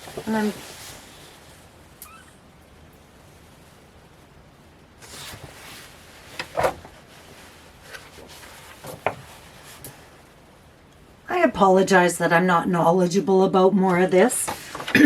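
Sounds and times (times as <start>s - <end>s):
paper rustling: 5.0s - 10.1s
books knocking and bumping: 6.3s - 7.0s, 7.9s - 9.5s.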